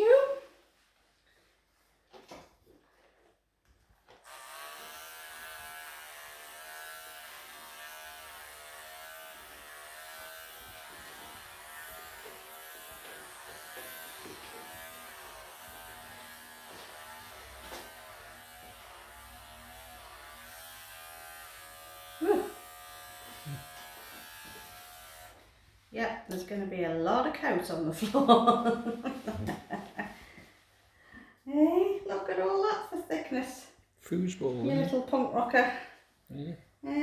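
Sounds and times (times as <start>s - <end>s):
electric pet clippers buzzing: 4.2s - 25.5s.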